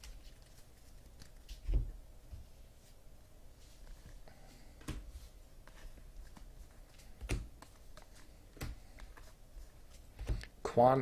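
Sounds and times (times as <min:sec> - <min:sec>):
cards rustling: 0:00.0 - 0:01.6.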